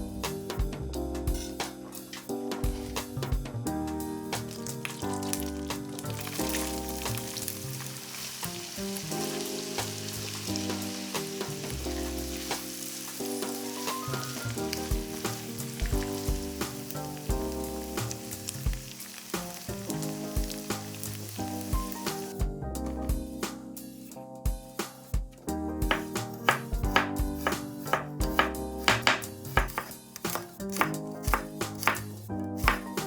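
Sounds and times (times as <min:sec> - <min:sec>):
background music: 0:00.0 - 0:33.0
food sizzling in oil: 0:04.4 - 0:22.4.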